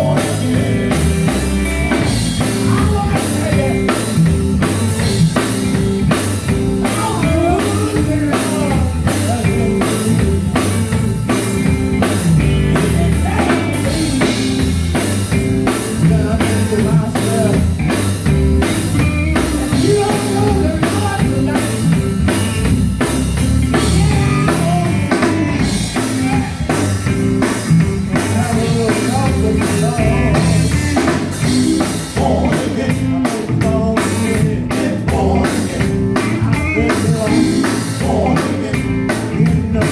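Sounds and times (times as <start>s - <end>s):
people singing: 0.0s - 4.5s, 6.8s - 14.8s, 19.6s - 22.5s, 23.7s - 26.9s, 28.1s - 39.9s
gospel band playing: 0.0s - 39.9s.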